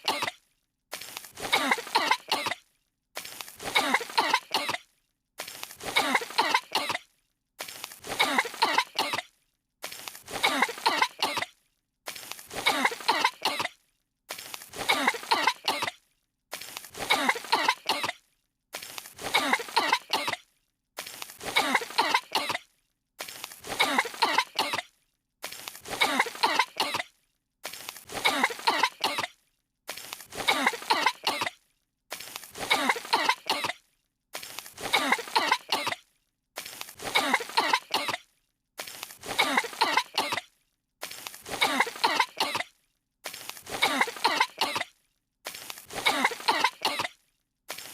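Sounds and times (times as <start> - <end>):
cartoon characters coughing: 0.0 - 0.4, 1.4 - 2.6, 3.6 - 4.9, 5.8 - 7.1, 8.0 - 9.3, 10.3 - 11.6, 12.5 - 13.8, 14.7 - 16.0, 17.0 - 18.2, 19.2 - 20.4, 21.4 - 22.6, 23.6 - 24.9, 25.8 - 27.1, 28.1 - 29.4, 30.3 - 31.6, 32.6 - 33.8, 34.8 - 36.0, 37.0 - 38.2, 39.2 - 40.5, 41.4 - 42.7, 43.7 - 45.0, 45.9 - 47.2.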